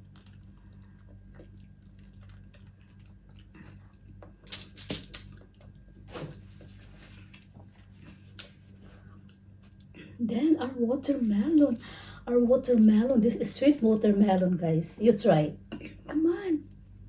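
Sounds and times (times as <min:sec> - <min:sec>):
wet chewing and slurping: 0:00.0 - 0:06.1
low steady hum: 0:00.0 - 0:17.0.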